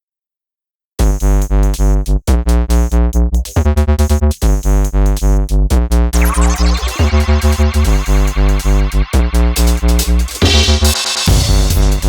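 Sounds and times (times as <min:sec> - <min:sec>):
electronic music with heavy beat: 0:01.0 - 0:12.0.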